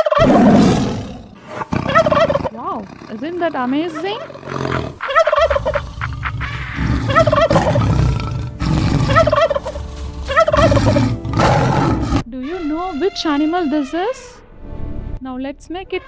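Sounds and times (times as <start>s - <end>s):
turkey gobbling: 3.8s - 8.3s, 9.0s - 11.2s.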